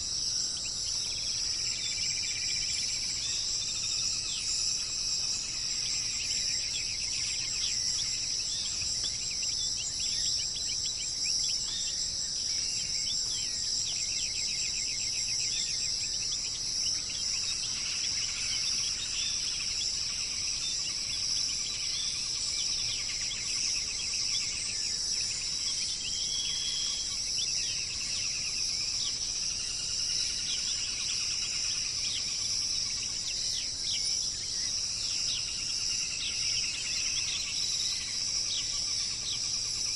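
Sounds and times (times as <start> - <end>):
birds chirping and trilling: 0.0 - 39.9
high-pitched insect drone: 0.0 - 39.9.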